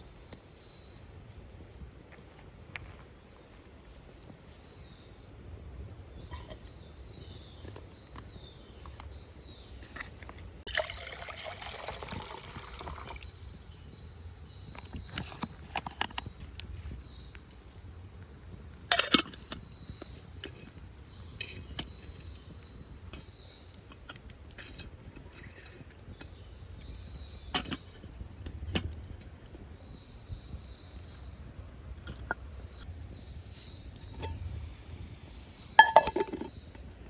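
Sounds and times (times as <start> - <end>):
small hard objects clinking: 35.8 - 36.6.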